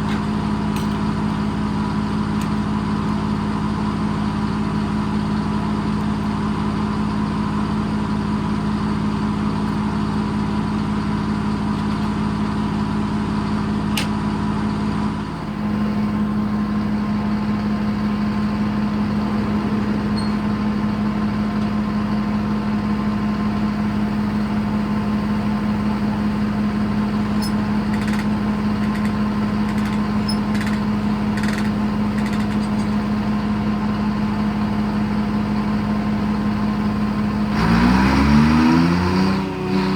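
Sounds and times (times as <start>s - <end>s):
diesel engine droning: 0.0s - 39.9s.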